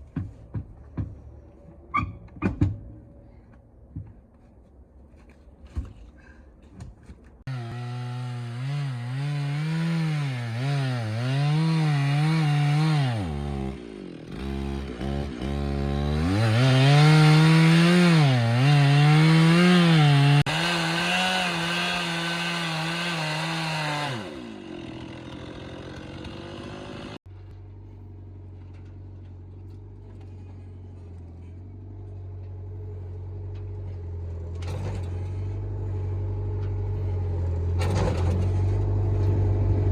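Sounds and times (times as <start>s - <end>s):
chainsaw cutting wood: 7.5s - 27.2s.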